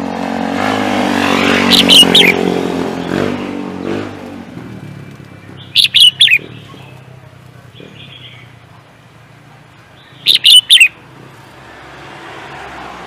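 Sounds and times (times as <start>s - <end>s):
passing vehicle engine: 0.0s - 13.0s
songbird sharp descending notes: 1.2s - 2.5s.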